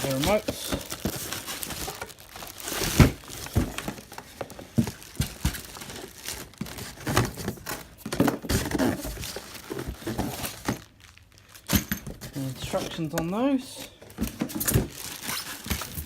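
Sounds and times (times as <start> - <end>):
plastic packaging crinkling: 0.0 - 11.8, 14.1 - 16.0.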